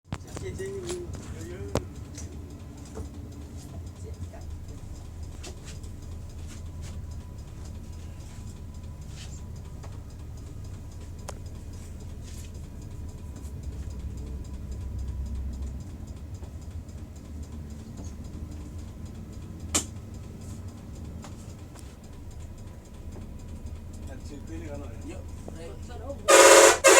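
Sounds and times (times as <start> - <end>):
faint clicks: 0.1 - 26.0
bus engine idling: 0.1 - 26.9
sharp click: 19.6 - 20.0.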